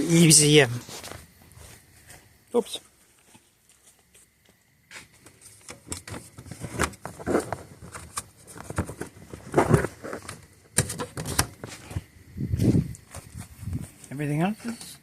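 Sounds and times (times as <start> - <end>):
rustling: 0.0 - 4.3, 4.9 - 14.9
hands handling parts: 4.9 - 12.1.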